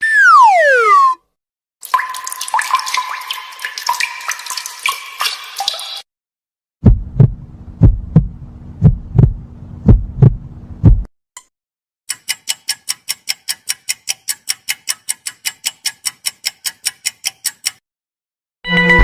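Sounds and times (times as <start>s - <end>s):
heartbeat lub-dub beats: 6.8s - 11.1s
rapid clicks and tinkling tones: 12.1s - 17.8s.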